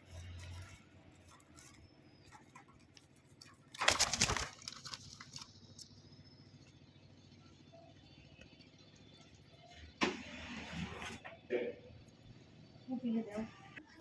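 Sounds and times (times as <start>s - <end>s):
dove wings flapping: 2.4s - 5.8s.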